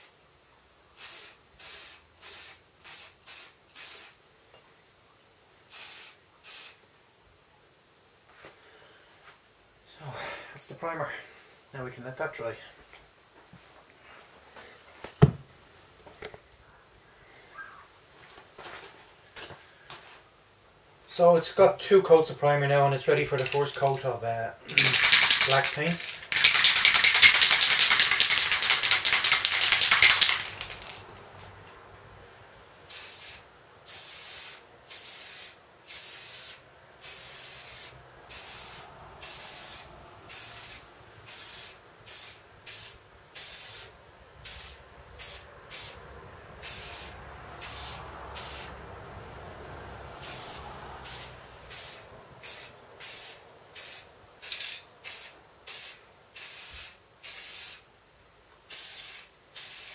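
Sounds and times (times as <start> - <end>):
spray paint hissing bursts: 0.9 - 4.2, 5.7 - 6.8, 23.3 - 24.0, 24.7 - 31.1, 32.9 - 46.0, 46.6 - 48.8, 50.2 - 57.9, 58.6 - 59.9
spray can ball rattling: 23.2 - 24.1, 24.7 - 31.2, 32.9 - 46.0, 46.6 - 48.7, 50.2 - 57.9, 58.7 - 59.9.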